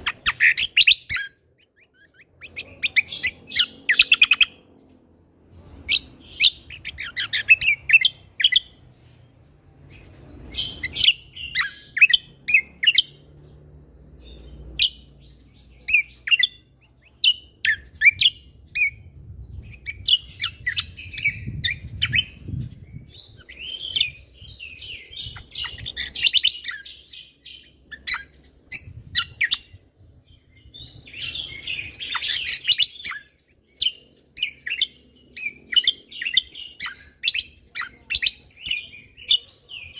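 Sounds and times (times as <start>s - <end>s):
songbird singing rapid chirps: 0.0s - 39.9s.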